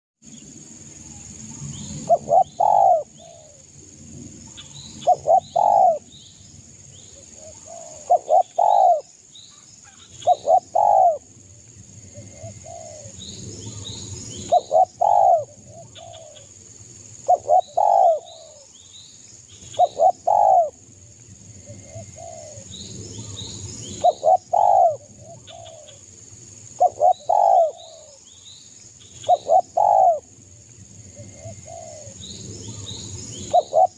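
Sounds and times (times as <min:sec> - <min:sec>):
dove cooing: 0:02.0 - 0:03.6, 0:05.0 - 0:06.0, 0:07.4 - 0:09.1, 0:09.9 - 0:11.2, 0:12.2 - 0:13.2, 0:14.5 - 0:16.5, 0:17.2 - 0:18.7, 0:19.8 - 0:20.8, 0:21.8 - 0:22.7, 0:24.0 - 0:26.0, 0:26.8 - 0:28.2, 0:29.2 - 0:30.3, 0:31.4 - 0:32.2, 0:33.4 - 0:33.9.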